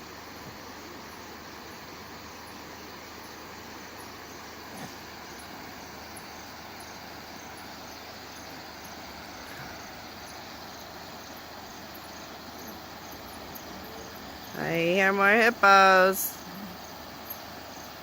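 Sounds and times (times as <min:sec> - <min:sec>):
insects chirping: 0:00.0 - 0:18.0
steady hiss: 0:00.0 - 0:18.0.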